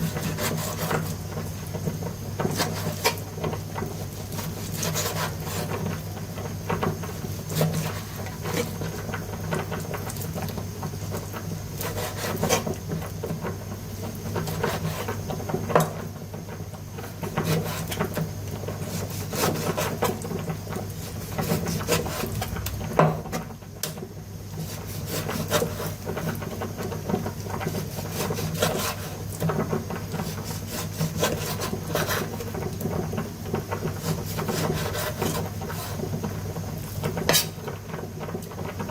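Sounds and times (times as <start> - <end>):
scraping on wooden board: 0.1 - 1.2, 4.4 - 5.8, 21.0 - 23.4, 24.6 - 26.4, 27.6 - 32.4, 33.8 - 36.2, 37.1 - 37.6
steady low hum: 20.2 - 26.1.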